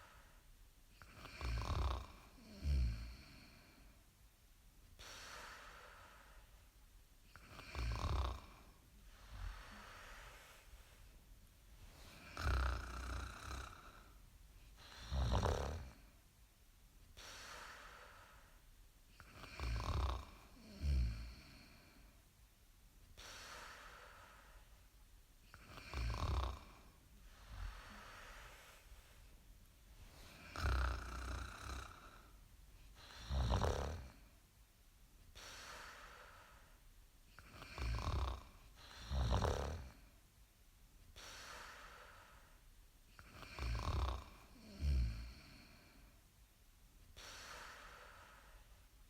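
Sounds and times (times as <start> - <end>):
quiet airy breaths: 0.0 - 49.0
rasping snores: 1.0 - 3.6, 7.4 - 10.1, 12.1 - 14.2, 14.8 - 16.0, 19.2 - 21.9, 25.5 - 28.5, 30.4 - 32.3, 33.0 - 34.2, 37.4 - 40.0, 43.2 - 46.0.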